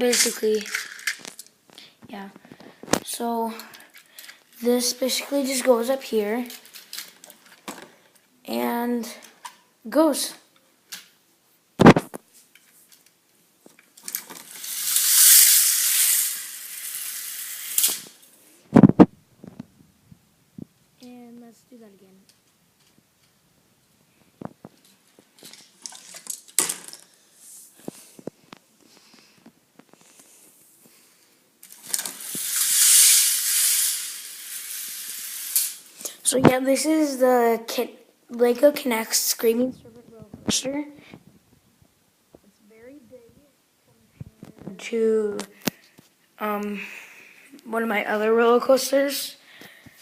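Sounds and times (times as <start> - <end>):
toy roller coaster rattling: 0.0 - 1.5, 14.0 - 18.2, 31.6 - 36.1.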